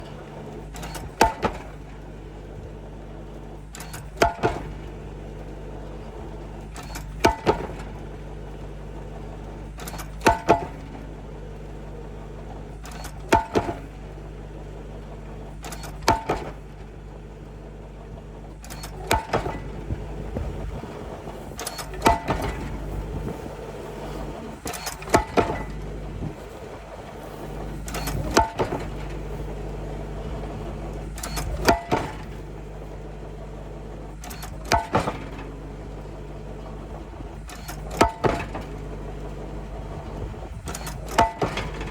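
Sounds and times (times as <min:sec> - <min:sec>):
rig engine hum: 0:00.0 - 0:41.9
pile-driving hammer clanging: 0:00.7 - 0:01.9, 0:03.7 - 0:05.0, 0:06.0 - 0:08.0, 0:09.7 - 0:11.0, 0:12.8 - 0:14.0, 0:15.6 - 0:16.9, 0:18.6 - 0:41.9.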